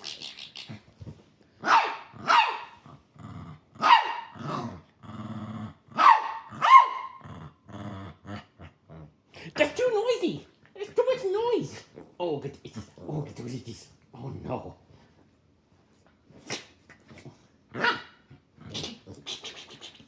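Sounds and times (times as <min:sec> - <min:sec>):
dog barking: 0:01.6 - 0:02.8, 0:03.8 - 0:04.6, 0:06.0 - 0:07.2, 0:17.8 - 0:18.1
dog growling: 0:02.8 - 0:09.2.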